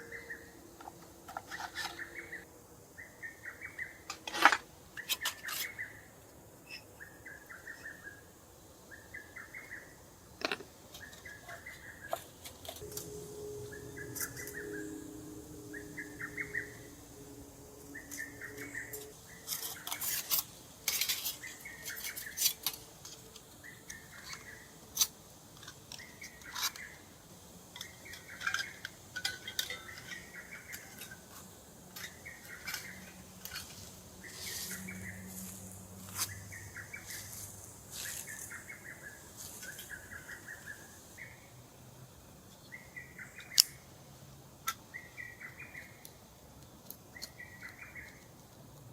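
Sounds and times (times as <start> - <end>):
bird calling: 12.8 - 24.7
metal cookware clinking: 27.8 - 31.2.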